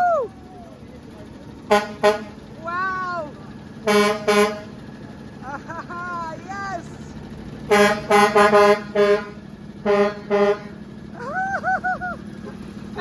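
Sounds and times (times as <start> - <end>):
truck air horn blasts: 1.6 - 2.5, 3.8 - 4.9, 7.6 - 11.0.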